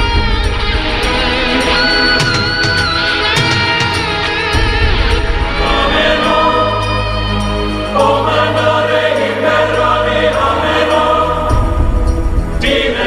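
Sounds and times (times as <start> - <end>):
choir-like singing: 5.2 - 13.0.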